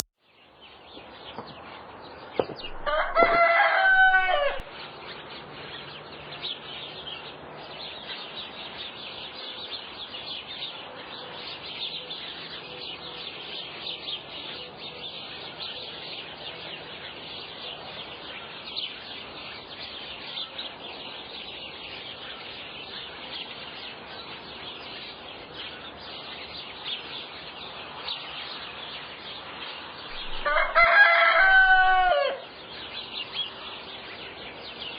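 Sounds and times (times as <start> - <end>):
rooster crowing: 2.7 - 4.7, 30.2 - 32.4.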